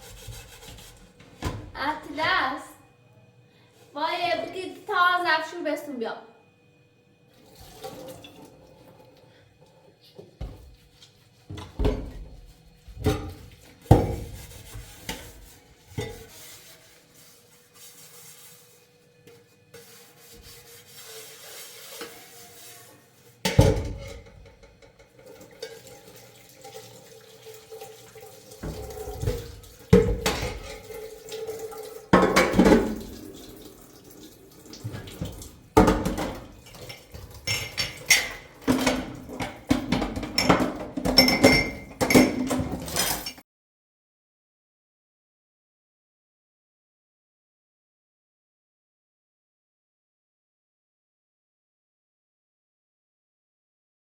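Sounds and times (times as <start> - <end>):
water running: 7.4 - 18.8, 19.8 - 43.4
dishes and pots clattering: 11.5 - 16.4, 23.4 - 43.4.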